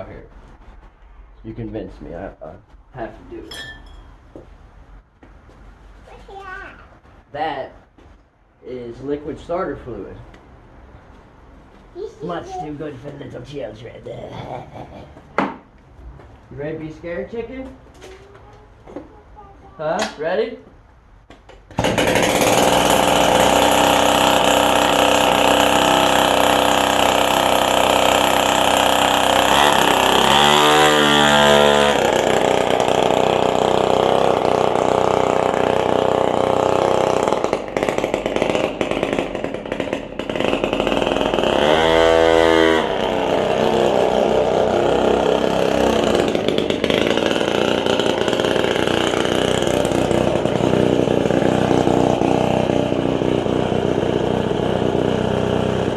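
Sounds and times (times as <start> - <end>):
scooter engine revving: 21.7 - 55.9.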